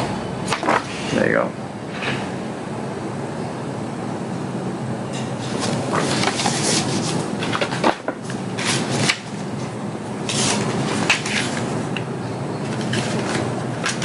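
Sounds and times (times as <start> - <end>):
cardboard and paper rustling: 5.4 - 9.4, 10.2 - 11.7, 12.6 - 14.0.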